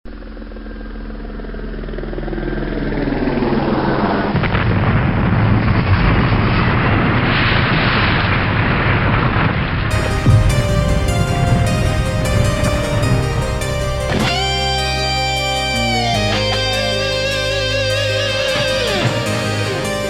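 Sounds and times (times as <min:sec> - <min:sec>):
dense noisy rumble: 0:00.1 - 0:20.0
guitars: 0:09.9 - 0:20.0
pitched music: 0:09.9 - 0:20.0.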